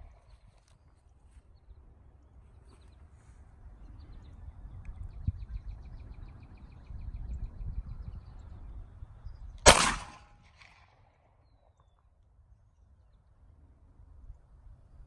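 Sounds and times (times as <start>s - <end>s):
pistol shot: 9.7s - 11.0s.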